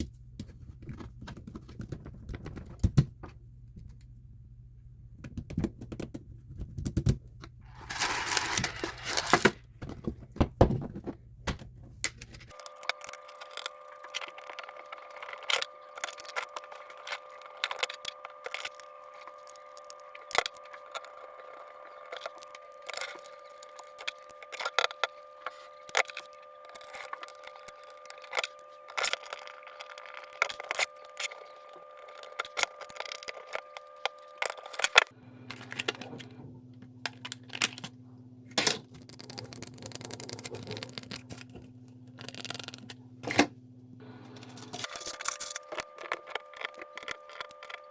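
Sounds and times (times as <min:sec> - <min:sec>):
steady hum: 0:12.0 - 0:47.9
keyboard parts clicking: 0:44.8 - 0:47.9.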